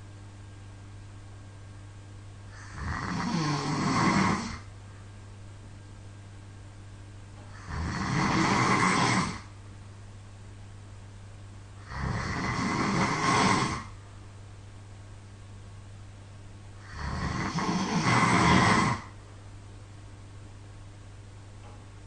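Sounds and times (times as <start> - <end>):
steady low hum: 0.0 - 22.0
person snoring loudly: 2.5 - 4.7, 7.5 - 9.5, 11.8 - 14.0, 16.8 - 19.2.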